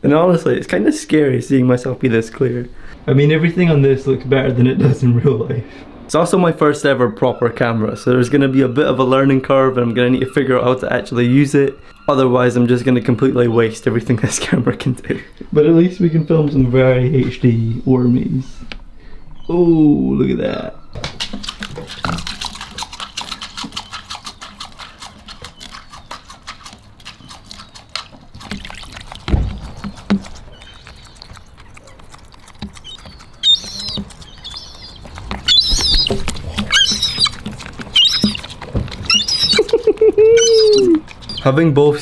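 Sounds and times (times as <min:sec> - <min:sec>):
gulls high-pitched calls: 0:32.7 - 0:41.6.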